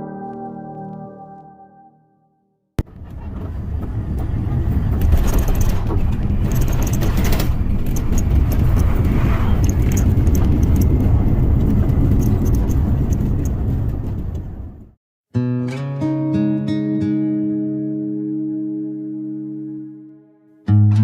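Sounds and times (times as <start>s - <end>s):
jet engine and airflow rumble: 2.8s - 15.0s
light rattles: 4.2s - 14.6s.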